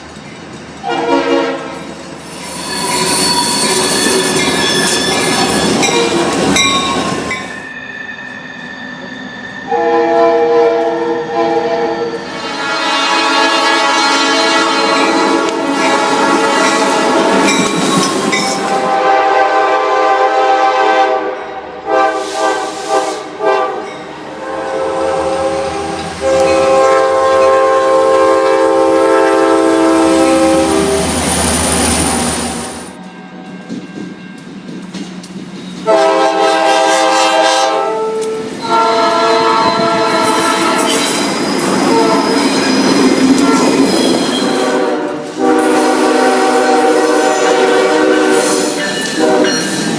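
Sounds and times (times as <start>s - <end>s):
locomotive air horn blasts: 0.9s - 1.8s, 9.7s - 17.6s, 18.6s - 31.1s, 35.8s - 41.1s, 41.8s - 42.5s, 43.4s - 43.8s, 44.4s - 49.7s.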